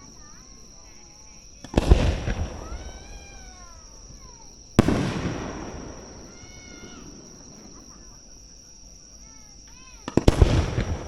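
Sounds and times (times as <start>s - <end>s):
firework bang rumbling: 1.6s - 8.2s, 10.0s - 11.0s
spectators crying out: 2.4s - 4.5s, 6.0s - 8.1s.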